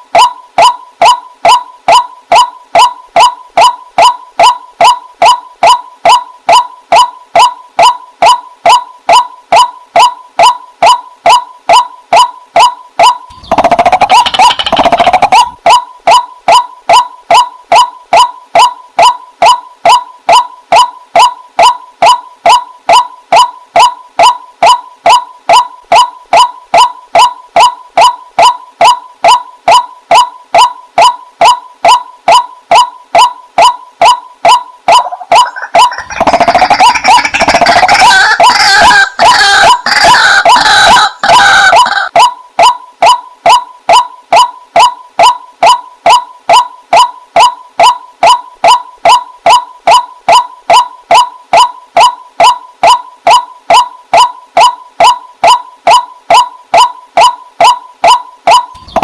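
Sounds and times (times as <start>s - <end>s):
waterhen calling: 13.3s - 16.2s, 35.0s - 42.2s, 58.5s - 59.0s.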